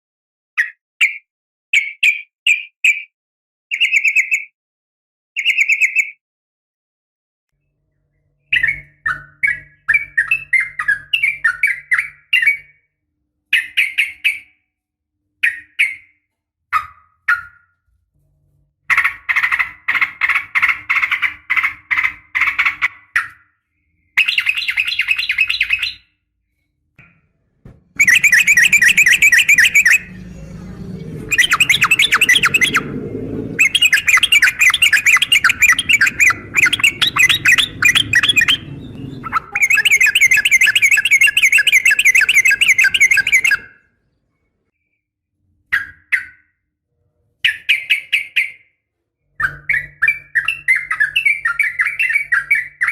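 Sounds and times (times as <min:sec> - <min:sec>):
bird chattering calls: 0:28.0 - 0:30.5, 0:31.2 - 0:33.0, 0:33.6 - 0:43.7.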